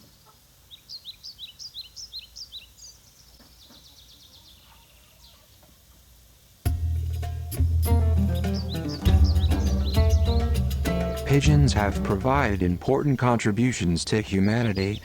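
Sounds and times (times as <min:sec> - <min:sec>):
small bird chirping: 0:00.0 - 0:05.7, 0:07.9 - 0:13.0
outdoor background noise: 0:00.0 - 0:15.0
music: 0:06.7 - 0:12.8.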